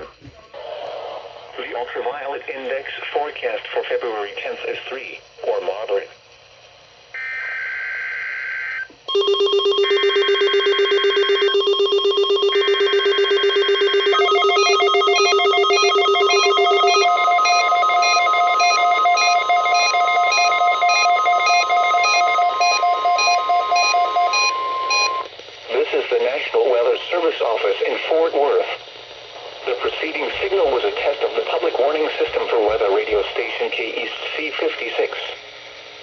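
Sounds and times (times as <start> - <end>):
buzzy data tone bursts: 7.1 - 25.9
fast-pulsing alarm: 7.2 - 25.3
steady warning alarm tone: 7.2 - 25.3
high beeps: 9.1 - 25.3.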